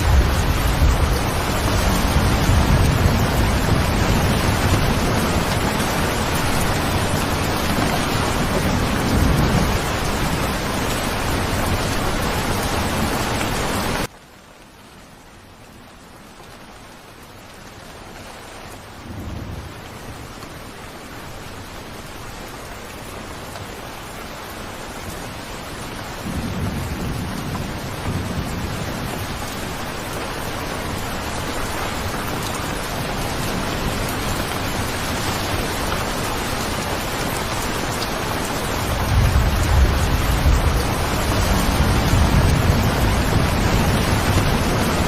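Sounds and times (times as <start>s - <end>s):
rain hissing: 0.0s - 14.1s, 15.4s - 45.0s
thunder rumbling: 0.0s - 14.1s, 26.1s - 45.0s.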